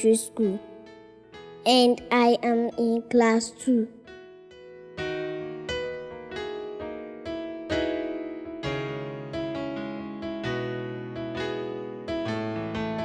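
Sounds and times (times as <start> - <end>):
electric piano slow melody: 4.0 - 13.0.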